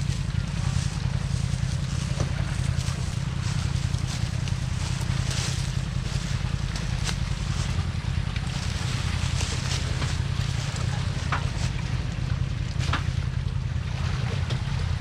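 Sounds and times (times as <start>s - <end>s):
vehicle engine droning: 0.0s - 15.0s.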